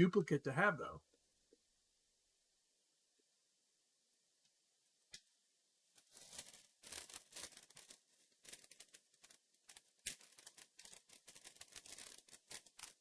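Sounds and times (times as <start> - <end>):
plastic packaging crinkling: 6.0 - 13.0.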